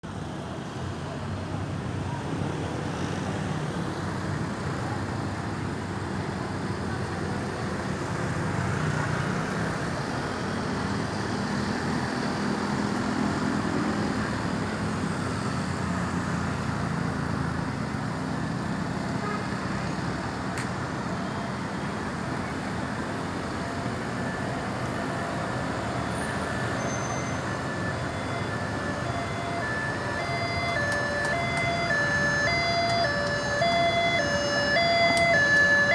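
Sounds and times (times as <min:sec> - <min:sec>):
road traffic noise: 0:00.0 - 0:35.9
heavy vehicle engine running: 0:09.6 - 0:35.9
ambulance electronic siren: 0:20.9 - 0:35.9.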